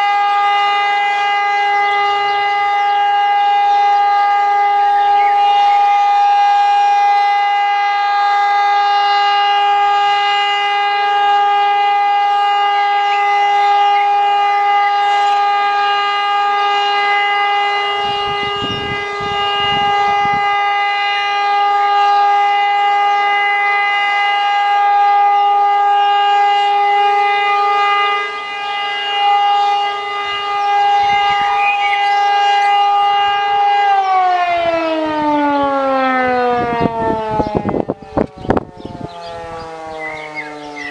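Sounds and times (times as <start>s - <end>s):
siren steady tone: 0.0s - 40.9s.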